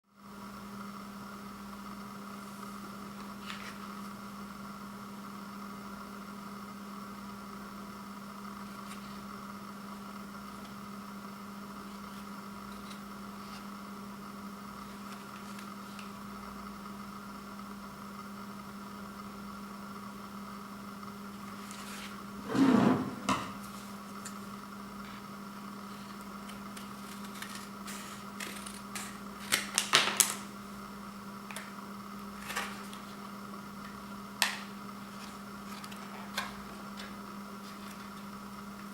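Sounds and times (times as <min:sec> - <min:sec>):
electrical hum with whine: 0:00.0 - 0:38.9
loud rustling scrape: 0:21.6 - 0:23.9.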